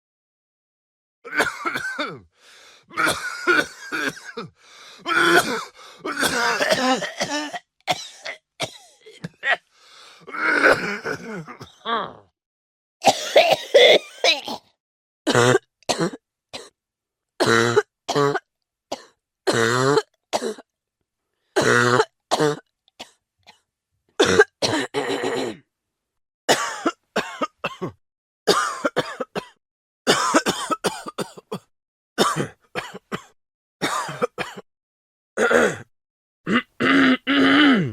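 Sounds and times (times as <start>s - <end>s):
person coughing: 1.3s - 2.3s, 2.9s - 12.2s, 13.0s - 16.7s, 24.2s - 25.6s, 26.5s - 34.6s, 35.4s - 35.9s, 36.5s - 37.9s.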